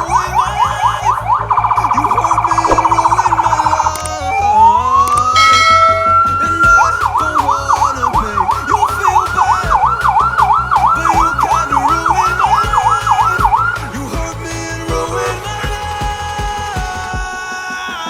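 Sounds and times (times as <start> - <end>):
siren yelping: 0.0 - 13.7
background music with beat: 0.0 - 18.0.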